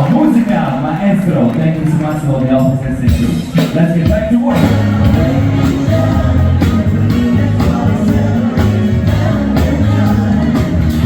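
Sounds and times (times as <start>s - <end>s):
upbeat song with bass and beat: 0.0s - 11.0s
person singing: 3.2s - 11.0s.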